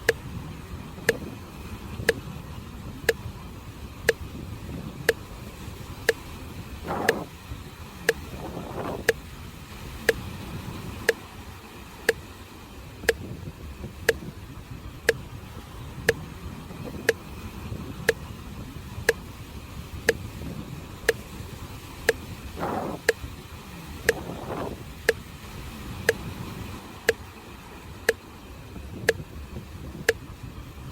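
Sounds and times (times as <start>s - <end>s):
sea waves on the shore: 0.0s - 30.9s
sharp ticking: 1.0s - 1.3s, 2.0s - 2.2s, 4.0s - 4.3s, 6.0s - 7.3s, 8.0s - 9.2s, 13.0s - 13.3s, 14.0s - 14.4s, 16.0s - 16.3s, 20.1s - 20.3s, 24.0s - 25.3s.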